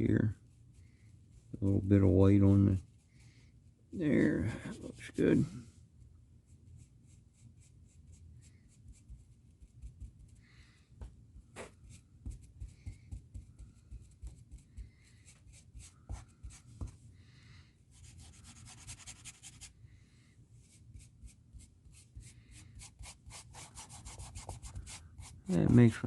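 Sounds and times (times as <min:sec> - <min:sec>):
paintbrush strokes: 0:00.1 - 0:10.8, 0:11.5 - 0:17.0, 0:17.9 - 0:19.8, 0:20.6 - 0:26.0
brush tapping: 0:11.5 - 0:17.0, 0:22.9 - 0:25.9.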